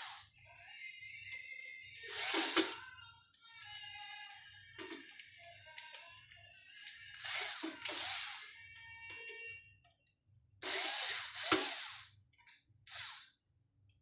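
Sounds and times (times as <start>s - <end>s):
electric screwdriver running: 2.1s - 2.8s, 7.2s - 8.5s, 10.6s - 12.1s, 12.9s - 13.3s.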